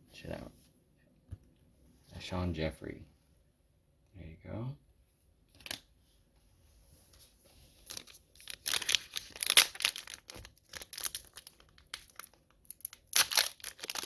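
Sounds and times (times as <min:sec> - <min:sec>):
wrapper crinkling and tearing: 0:07.8 - 0:14.0.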